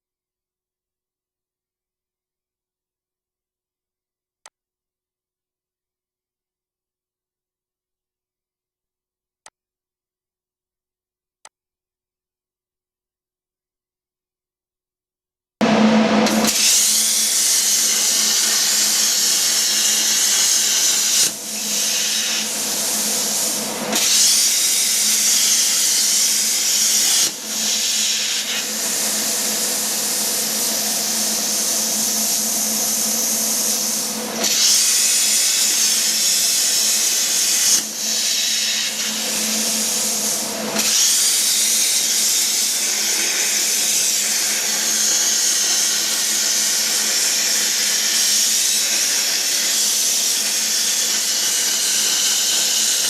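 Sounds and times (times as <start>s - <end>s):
plasma cutter hissing: 16.2s - 53.0s.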